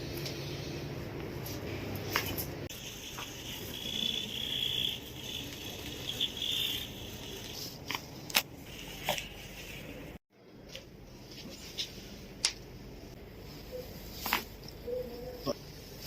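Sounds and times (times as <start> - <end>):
high wavering whine: 2.7 - 7.6.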